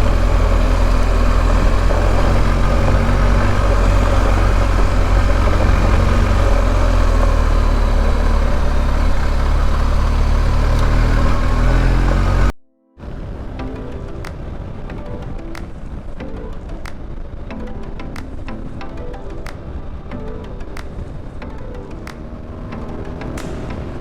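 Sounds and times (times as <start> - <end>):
motorcycle engine running: 0.0 - 12.5, 20.7 - 24.0
tyre noise: 0.0 - 13.4
wind noise: 0.0 - 24.0.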